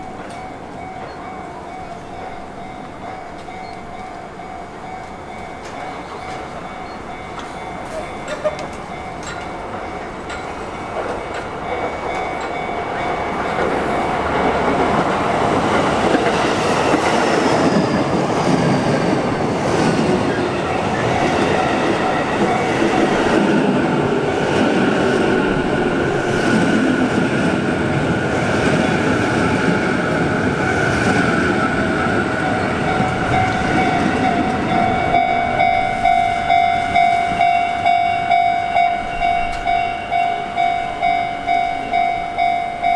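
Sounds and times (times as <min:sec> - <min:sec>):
level crossing warning bell: 0:00.0 - 0:25.8, 0:28.8 - 0:42.9
train wheels clattering over rails: 0:07.3 - 0:36.2.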